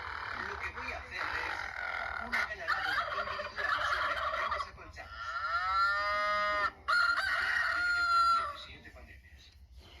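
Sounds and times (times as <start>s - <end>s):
turkey gobbling: 0.0s - 8.6s.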